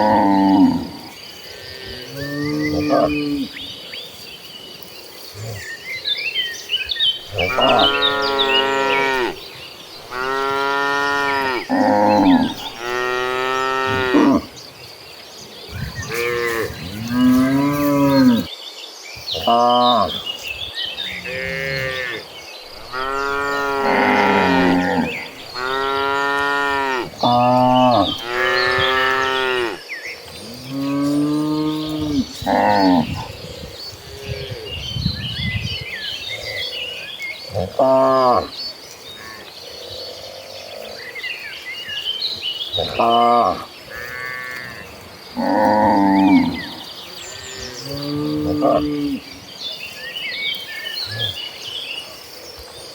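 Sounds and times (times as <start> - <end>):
small birds chirping: 0.0 - 52.9
cattle mooing: 7.3 - 9.4, 10.0 - 14.5, 21.2 - 29.8.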